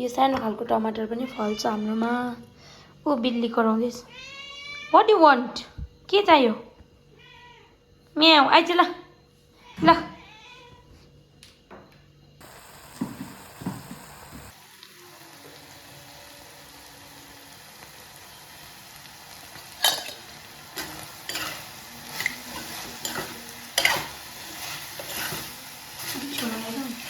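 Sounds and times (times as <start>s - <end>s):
meat sizzling in a pan: 12.4s - 27.0s
spatula scraping a pan: 20.8s - 26.8s.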